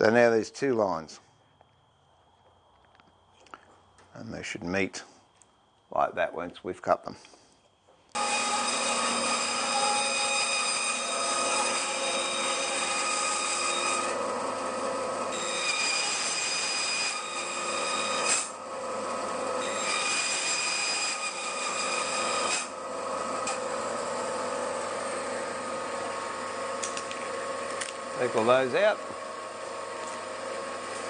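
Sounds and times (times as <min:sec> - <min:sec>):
bandsaw cutting timber: 0:08.2 - 0:31.0.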